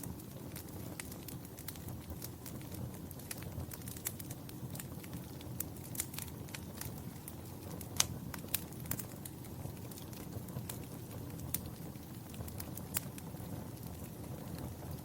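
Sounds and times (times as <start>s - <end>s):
fire crackling and popping: 0.0s - 15.0s
fire flames rumbling: 0.0s - 15.0s.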